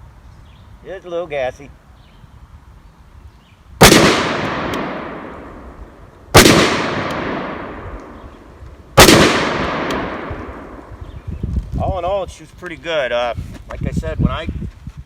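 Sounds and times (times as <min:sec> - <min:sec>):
gunshots echoing: 0:03.8 - 0:08.3, 0:09.0 - 0:11.0.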